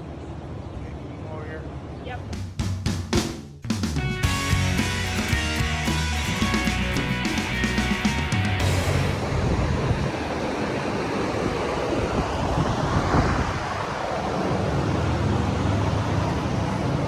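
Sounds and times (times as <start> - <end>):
wind buffeting microphone: 8.9 - 17.0.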